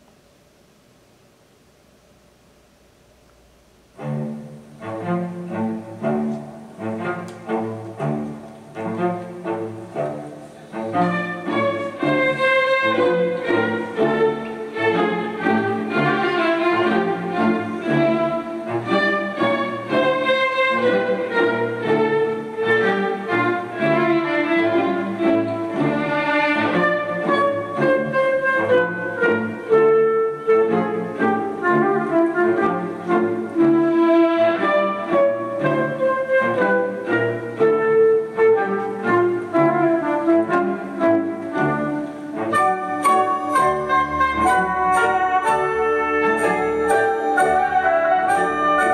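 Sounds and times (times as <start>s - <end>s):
classical string music: 3.6s - 48.9s.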